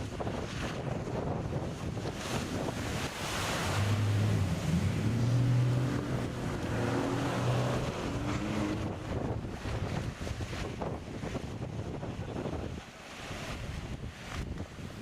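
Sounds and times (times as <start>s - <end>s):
wash of water: 0.0s - 14.6s
wind noise on microphone: 0.0s - 15.0s
boat engine running: 0.1s - 12.8s.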